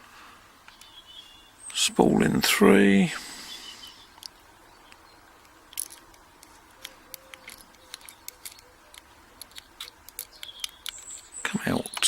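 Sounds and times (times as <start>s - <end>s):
tweezers clicking on lock pins: 5.7s - 12.0s.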